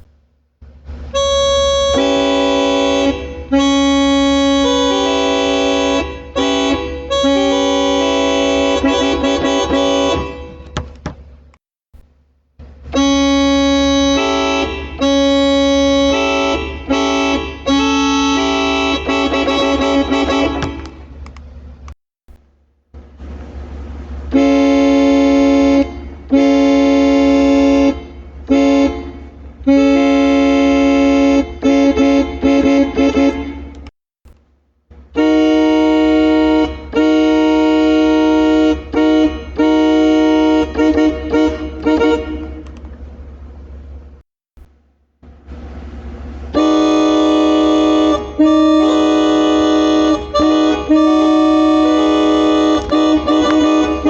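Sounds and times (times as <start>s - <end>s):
keyboard imitating air horn: 1.1s - 11.1s, 12.9s - 21.1s, 24.3s - 33.9s, 35.1s - 42.9s, 46.5s - 54.0s.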